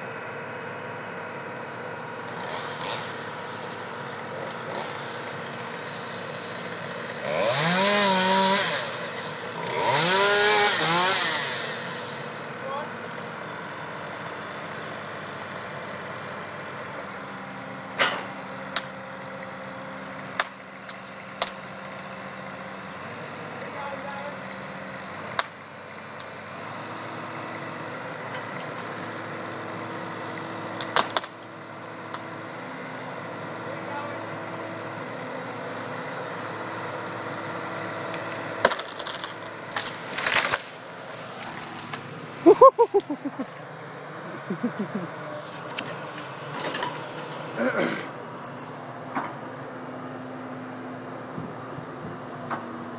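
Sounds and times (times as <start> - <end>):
digger engine running: 0.0 - 52.9
tree wood cracking and splintering: 38.7 - 42.1.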